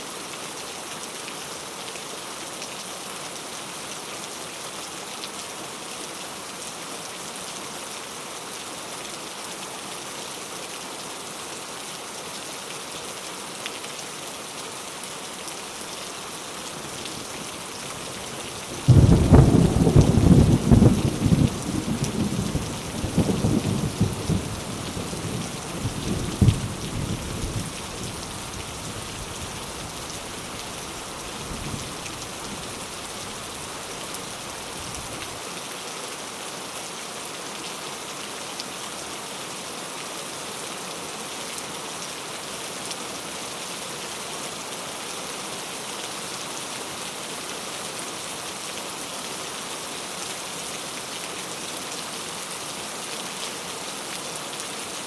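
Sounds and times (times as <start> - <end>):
steady rain: 0.0 - 55.0
thunder rumbling: 18.2 - 28.9
thunder clap: 18.8 - 21.4.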